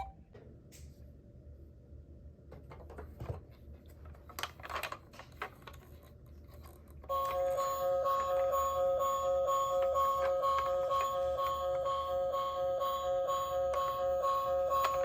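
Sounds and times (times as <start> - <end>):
toy car plastic clicks and rattles: 4.0 - 8.5, 9.7 - 11.6, 14.6 - 15.0
toy car electronic siren: 7.1 - 15.0.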